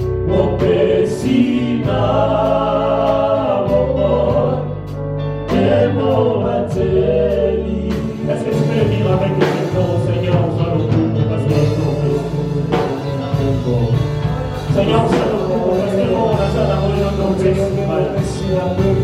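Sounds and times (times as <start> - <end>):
bass: 0.0 - 19.0
guitar playing: 0.0 - 19.0
person singing: 5.5 - 19.0.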